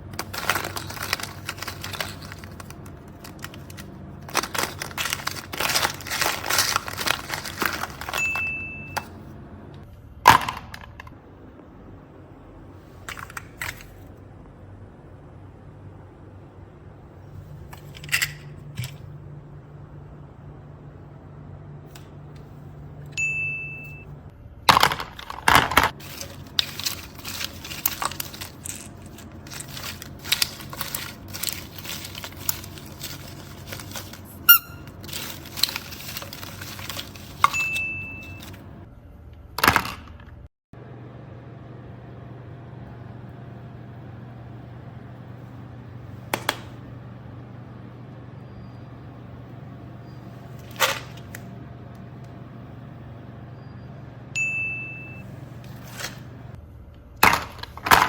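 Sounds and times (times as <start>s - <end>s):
steady low hum: 0.0s - 58.0s
short high beep: 23.2s - 24.1s
hard objects clicking and knocking: 57.2s - 58.0s.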